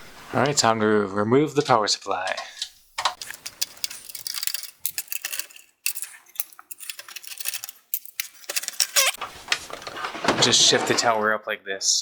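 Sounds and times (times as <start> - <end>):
metallic clicks and clinks: 2.3 - 9.2.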